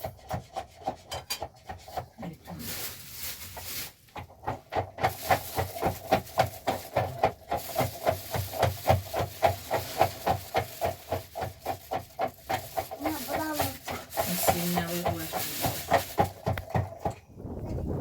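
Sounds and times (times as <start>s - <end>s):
rhythmic rasping strokes: 7.5s - 16.9s.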